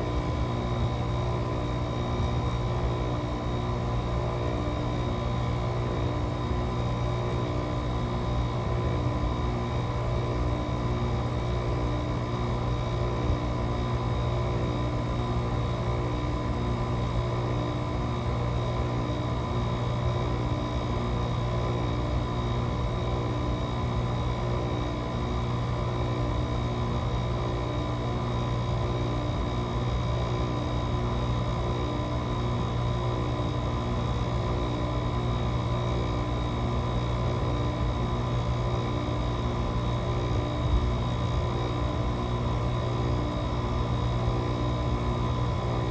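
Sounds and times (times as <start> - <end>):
air conditioner humming: 0.0 - 3.1, 39.4 - 45.9.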